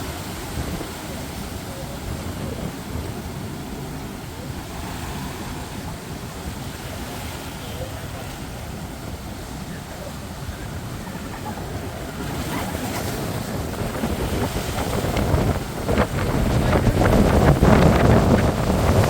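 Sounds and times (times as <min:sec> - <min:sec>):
ocean surf: 0:00.0 - 0:19.0
wind buffeting microphone: 0:00.0 - 0:19.0.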